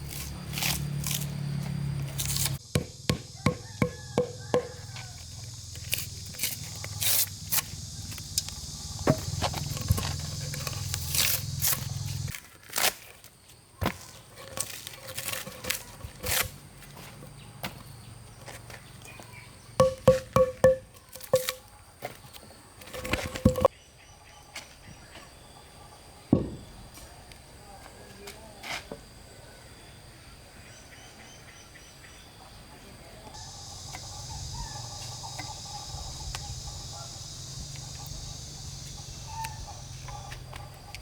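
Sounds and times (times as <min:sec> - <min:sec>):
hand tool knocking wood: 0:02.7 - 0:05.1, 0:09.0 - 0:10.6, 0:19.8 - 0:21.6, 0:23.2 - 0:23.7.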